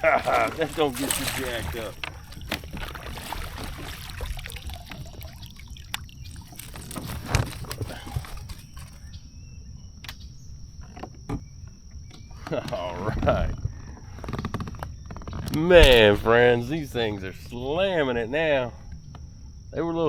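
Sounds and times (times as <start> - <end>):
tackle and hull knocks: 0.0 - 9.0
water splashing and dripping: 0.0 - 9.0.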